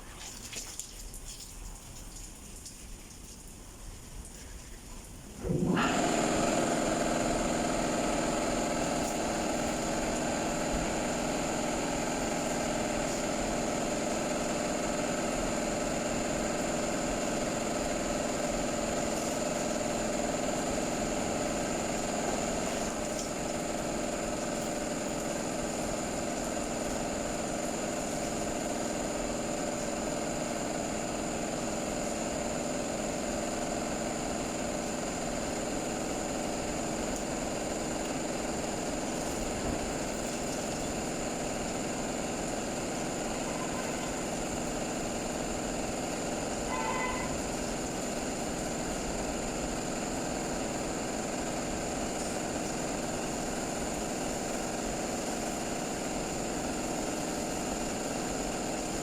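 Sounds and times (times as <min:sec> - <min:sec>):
motor humming with high whine: 0:03.4 - 0:59.0.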